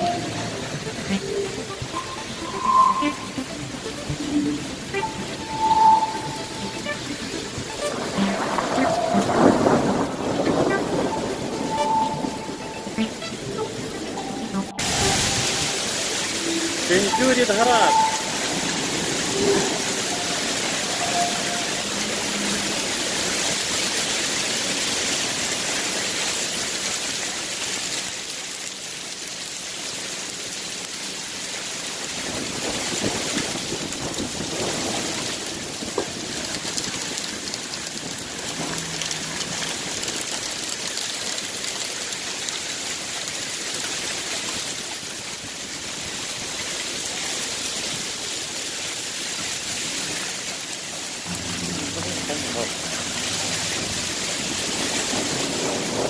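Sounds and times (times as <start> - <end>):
hail pelting on a garage: 7.4 - 12.3, 15.4 - 56.0.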